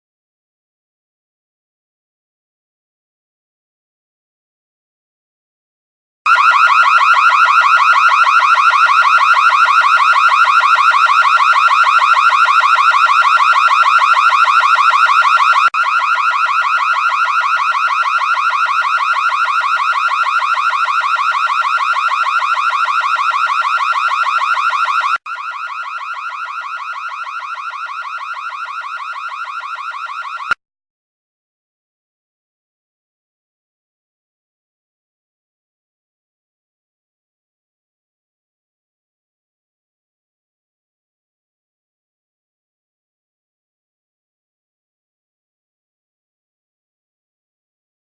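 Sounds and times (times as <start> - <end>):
electronic pulsing alarm buzz: 6.3 - 30.6.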